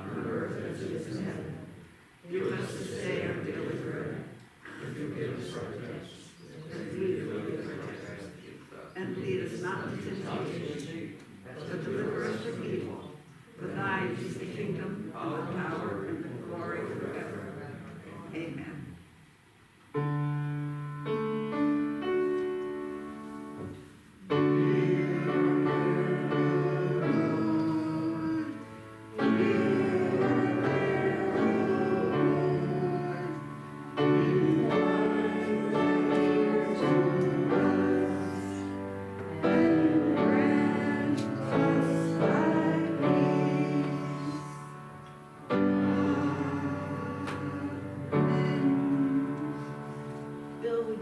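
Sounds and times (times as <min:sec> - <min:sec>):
slow church keyboard chords: 0:00.0 - 0:06.0, 0:19.8 - 0:51.0.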